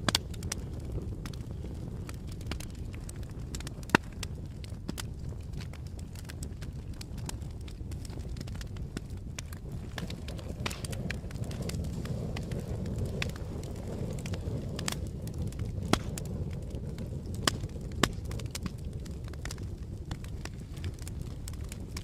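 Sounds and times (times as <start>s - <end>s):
campfire crackling: 0.0s - 22.0s
fire pops: 0.0s - 22.0s.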